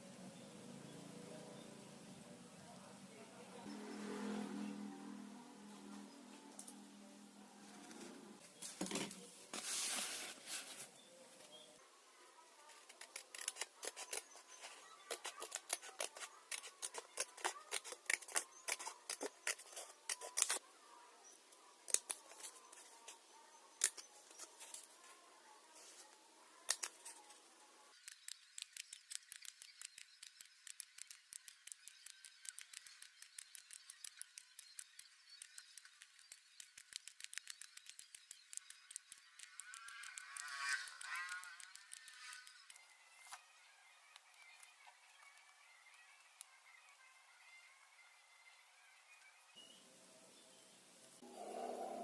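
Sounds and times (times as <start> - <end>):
scissors snipping tin sheet: 12.8 - 20.6.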